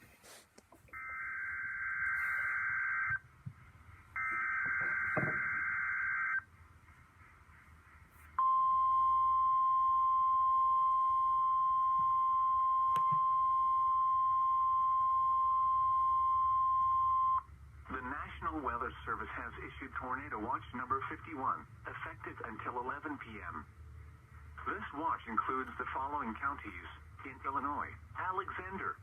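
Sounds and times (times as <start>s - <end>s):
steady warning alarm tone: 0.9s - 3.3s, 4.0s - 6.5s, 8.4s - 17.5s.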